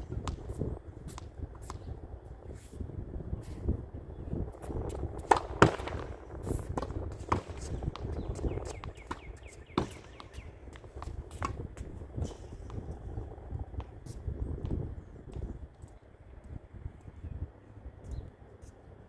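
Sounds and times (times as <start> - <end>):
tennis ball knocks on racket and wall: 5.2 - 6.1.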